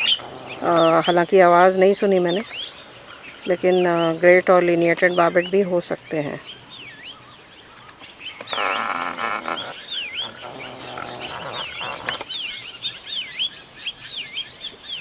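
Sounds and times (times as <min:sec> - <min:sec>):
bird swooping call: 0:00.0 - 0:01.2
low drawn-out animal call: 0:00.0 - 0:03.5, 0:08.3 - 0:12.4
high insect drone: 0:00.0 - 0:15.0.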